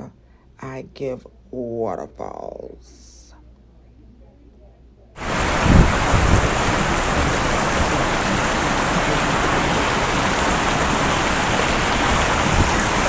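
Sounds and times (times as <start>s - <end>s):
falling water rushing: 5.2s - 13.0s.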